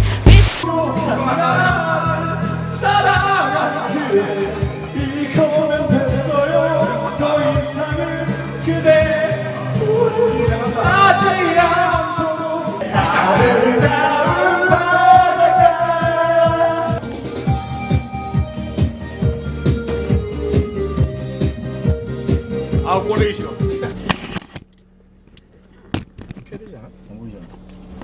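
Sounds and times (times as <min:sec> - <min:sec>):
pop song with singing: 0:00.0 - 0:17.9.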